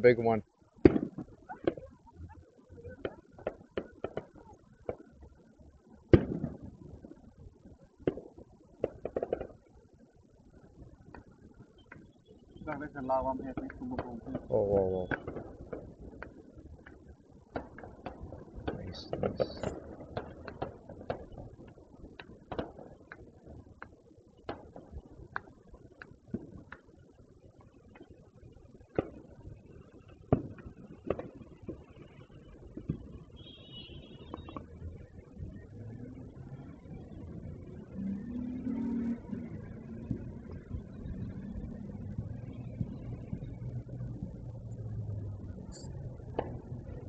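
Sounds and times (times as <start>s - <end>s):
firework rumble: 0.0s - 47.0s
distant fireworks popping and banging: 0.1s - 47.0s
firework crackles: 6.1s - 10.0s, 12.0s - 35.4s.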